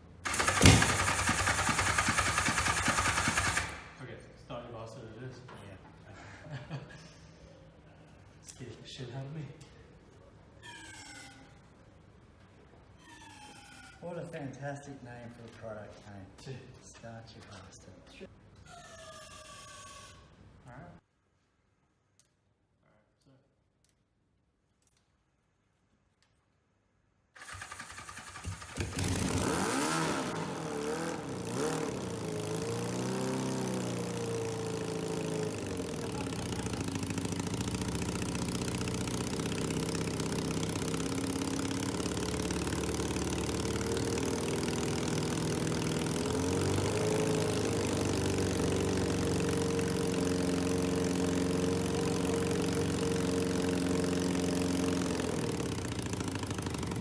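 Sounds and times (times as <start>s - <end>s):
motorcycle engine revving and idling: 0.0s - 4.0s, 27.4s - 57.0s.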